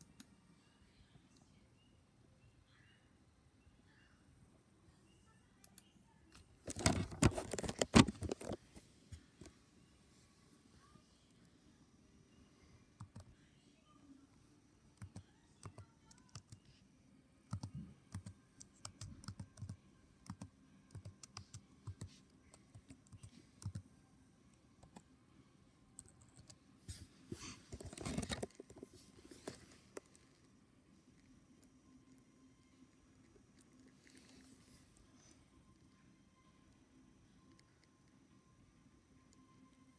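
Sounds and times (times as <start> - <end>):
mechanical keyboard keystrokes: 6.7 - 8.6.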